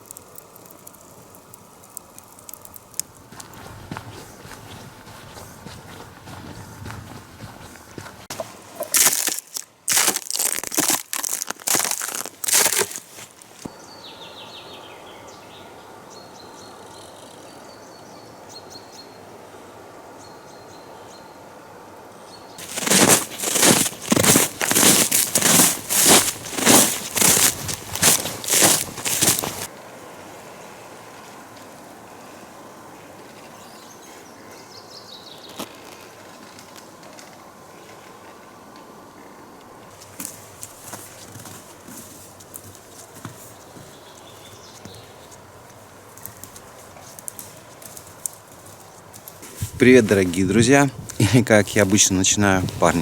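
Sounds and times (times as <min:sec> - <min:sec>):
songbirds singing: 0:13.6 - 0:19.2, 0:33.4 - 0:35.8, 0:43.5 - 0:48.2.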